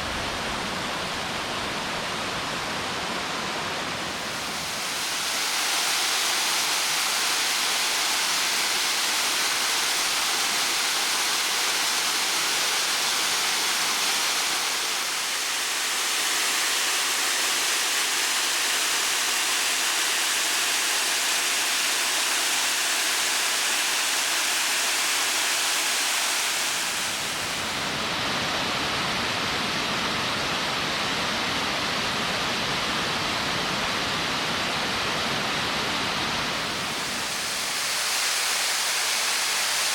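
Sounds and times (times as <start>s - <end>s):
water rushing over rocks: 3.4s - 28.2s.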